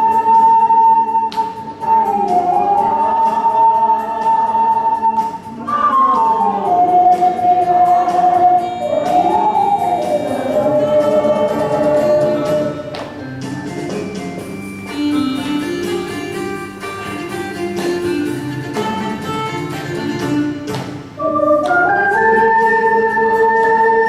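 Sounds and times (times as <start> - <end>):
crowd singing along: 0.0 - 13.1, 21.1 - 24.0
ocarina ensemble playing: 0.0 - 24.0.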